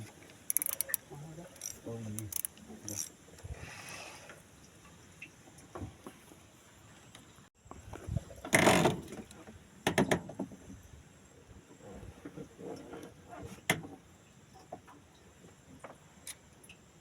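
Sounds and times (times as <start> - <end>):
sharp clicks: 0.5 - 3.1.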